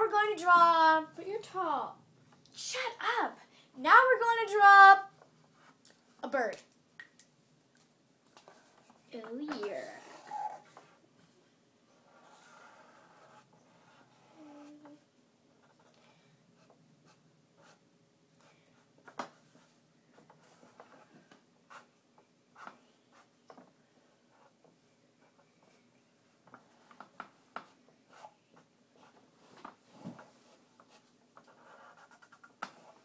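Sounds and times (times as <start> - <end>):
scratching of drawing on paper: 8.4 - 11.0, 11.9 - 15.0, 16.6 - 17.8, 18.4 - 21.9, 26.5 - 33.0.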